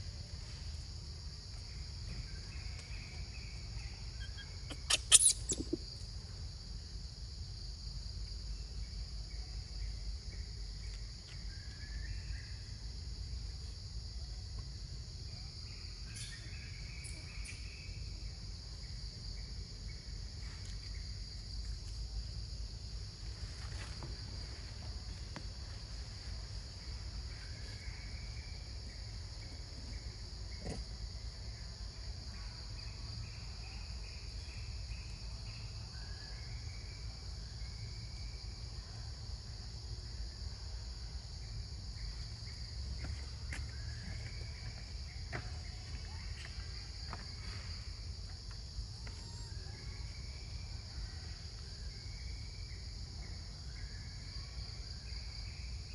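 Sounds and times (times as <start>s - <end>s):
insects droning: 0.0s - 55.9s
faint chirps: 2.0s - 6.2s
sharp click: 4.7s - 5.7s.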